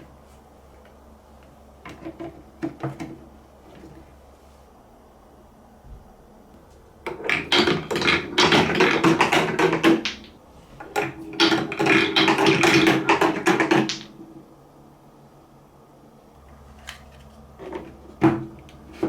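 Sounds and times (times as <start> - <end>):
marbles rolling on plastic track: 7.1 - 14.2.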